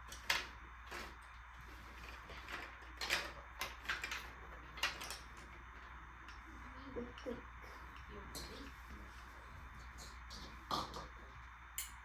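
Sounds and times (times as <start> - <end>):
marbles clattering on plastic track: 1.8 - 5.8.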